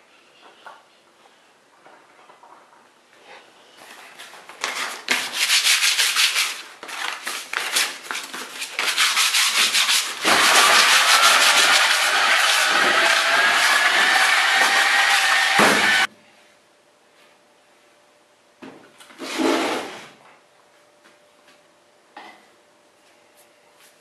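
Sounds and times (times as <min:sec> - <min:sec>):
sanding strokes on hard surface: 0:05.1 - 0:06.6, 0:08.5 - 0:16.1.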